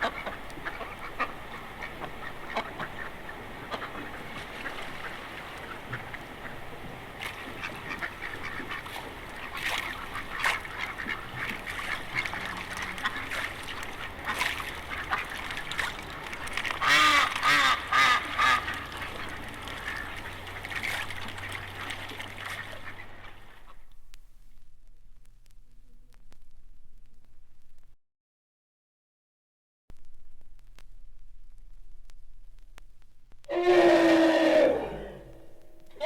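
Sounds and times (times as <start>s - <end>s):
waterfowl calling: 0.0s - 23.9s, 33.5s - 36.0s.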